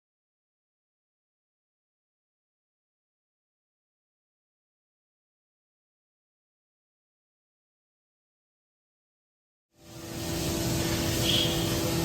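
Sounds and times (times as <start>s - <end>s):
milling machine hum: 9.8s - 12.0s
brief high whistle: 11.2s - 11.8s.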